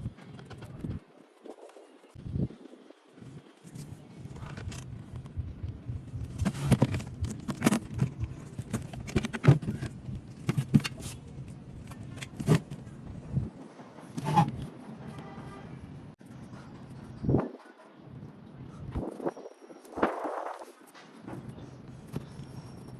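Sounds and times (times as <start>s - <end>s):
low steady hum: 2.1s - 17.4s.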